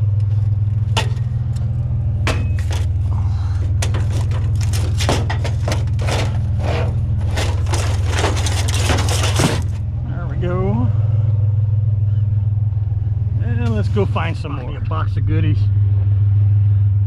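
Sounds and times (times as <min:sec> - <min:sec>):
metal scrap clanking and scraping: 0:00.0 - 0:09.9
truck engine idling: 0:00.0 - 0:17.0.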